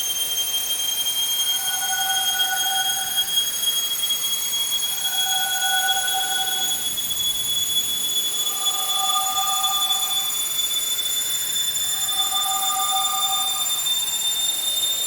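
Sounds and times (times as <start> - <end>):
spaceship engine whine and hum: 4.9 - 15.0
low two-tone pulsing drone: 5.0 - 6.8, 8.4 - 14.0.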